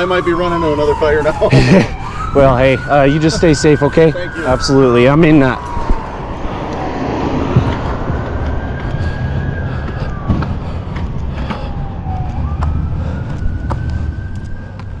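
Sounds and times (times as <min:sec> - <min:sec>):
emergency vehicle siren wailing: 0:00.0 - 0:15.0
steady low rumble: 0:04.2 - 0:14.8.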